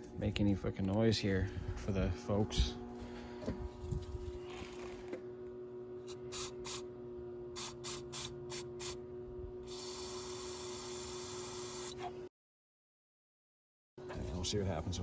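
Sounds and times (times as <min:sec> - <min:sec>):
aerosol can spraying: 0:07.6 - 0:09.0.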